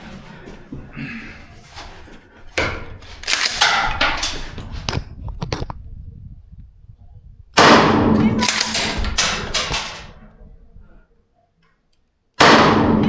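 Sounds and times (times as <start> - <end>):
rifle shots: 7.6 - 10.1.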